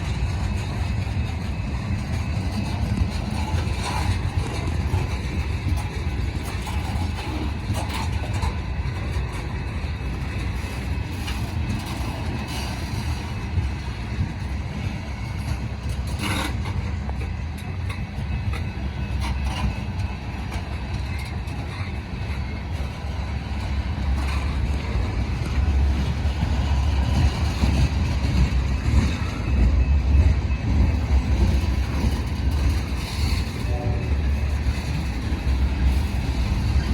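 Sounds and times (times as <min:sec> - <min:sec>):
freight train rumbling: 0:00.0 - 0:36.9.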